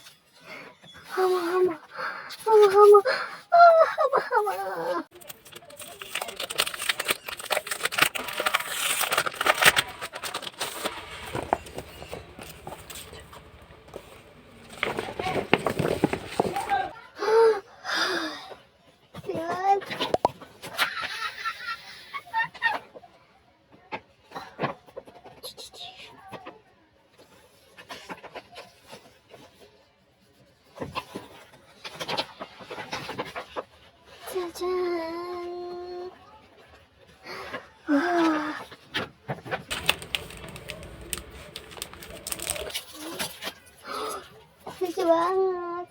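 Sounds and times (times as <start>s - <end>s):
packaging and paper rustling: 5.1s - 16.9s, 39.6s - 43.6s.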